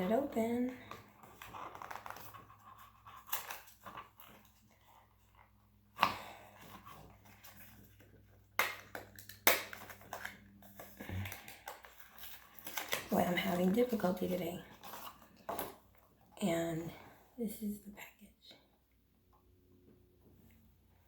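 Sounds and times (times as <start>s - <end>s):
packaging rustling and clicking: 0.8s - 5.5s, 6.6s - 14.0s.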